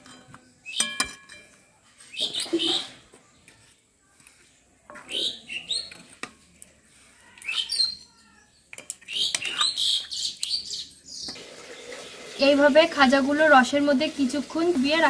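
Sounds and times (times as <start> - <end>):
birds chirping: 2.0 - 3.6, 4.4 - 6.2, 7.2 - 11.9.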